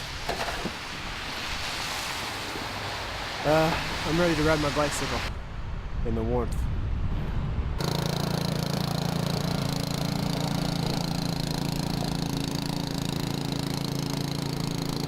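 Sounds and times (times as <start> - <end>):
engine humming steadily: 7.8 - 15.0.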